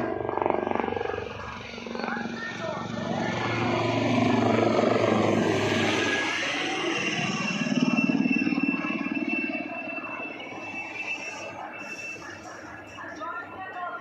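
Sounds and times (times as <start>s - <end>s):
pulsing low rumble: 0.0s - 9.5s
steady high whine: 0.0s - 13.5s
aircraft engine noise: 0.0s - 13.6s.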